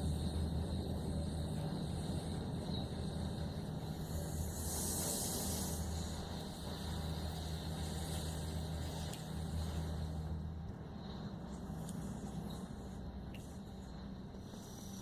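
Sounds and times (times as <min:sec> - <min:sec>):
low engine-like hum: 0:00.0 - 0:15.0
burst of hissing: 0:03.8 - 0:10.2.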